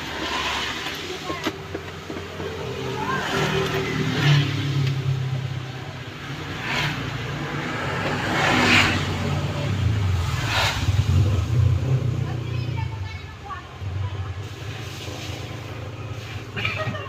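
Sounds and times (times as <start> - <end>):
vehicle engine running: 8.9 - 17.0.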